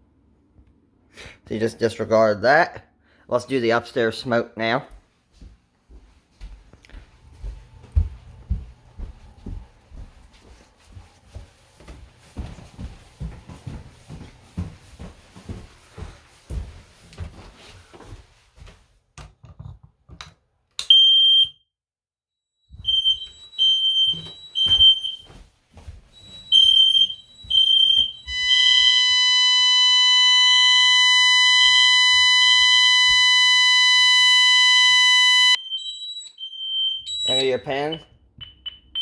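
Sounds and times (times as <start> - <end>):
smoke detector beeping: 20.8 - 21.6, 22.7 - 25.3, 26.2 - 39.0
loud steady alarm tone: 22.8 - 25.3, 26.2 - 39.0.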